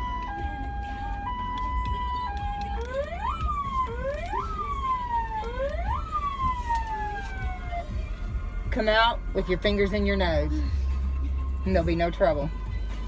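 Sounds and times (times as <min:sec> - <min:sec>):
electronic siren wailing: 0:00.0 - 0:07.8
low vehicle rumble: 0:00.0 - 0:13.0.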